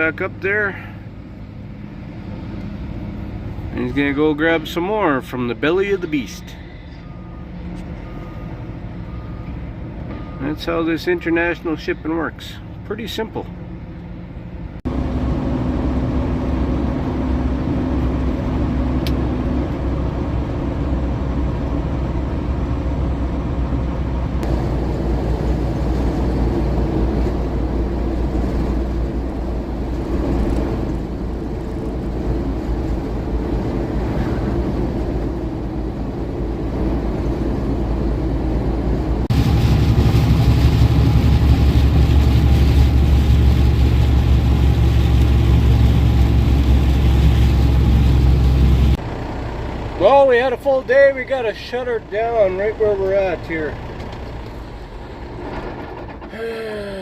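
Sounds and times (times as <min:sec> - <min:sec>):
diesel truck engine drone: 0:00.0 - 0:57.0.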